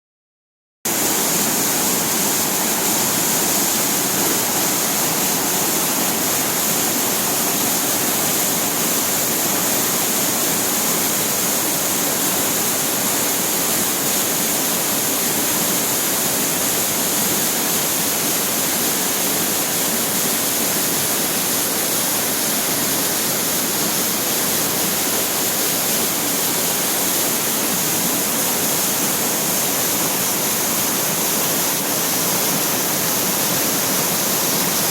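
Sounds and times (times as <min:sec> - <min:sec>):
waterfall pouring: 0:00.9 - 0:21.4.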